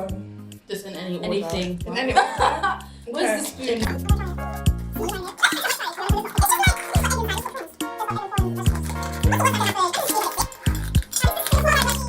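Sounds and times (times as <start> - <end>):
music with deep bass and kick drum: 1.7 - 2.9, 3.9 - 5.2.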